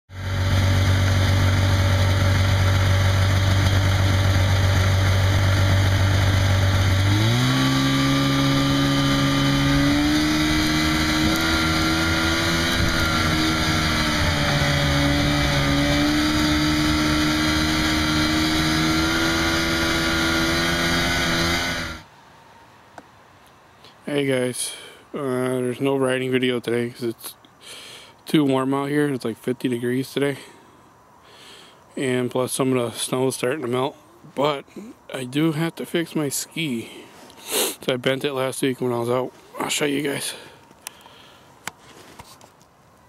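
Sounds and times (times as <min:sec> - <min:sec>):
snowmobile engine running: 0:00.1 - 0:22.0.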